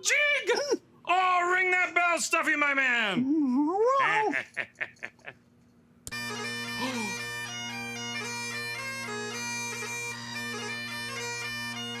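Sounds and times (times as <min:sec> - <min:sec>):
bagpipes playing a jig: 0:06.1 - 0:12.0.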